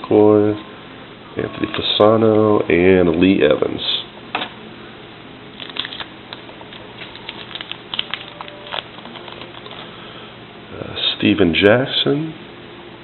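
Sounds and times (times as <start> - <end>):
trading cards clicking and rustling: 5.6 - 9.9.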